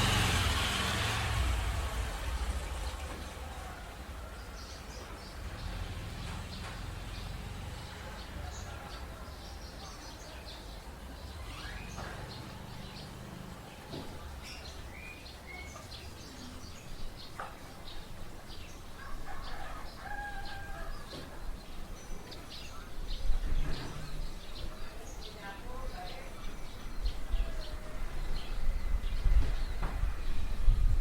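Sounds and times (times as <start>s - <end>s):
small birds chirping: 2.6s - 30.9s
rooster crowing: 19.0s - 21.3s.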